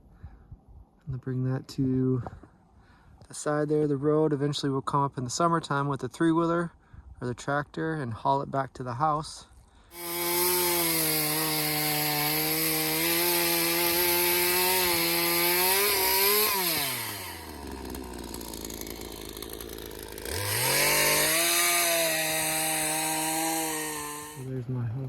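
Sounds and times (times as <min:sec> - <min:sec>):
chainsaw running: 0:09.9 - 0:25.0.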